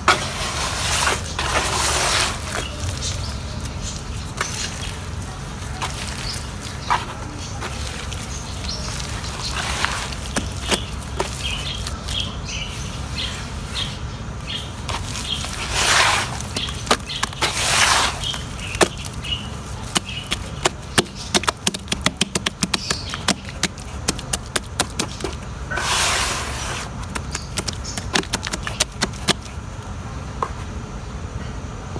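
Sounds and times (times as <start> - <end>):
rushing noises: 0.0 - 21.4, 22.8 - 29.5.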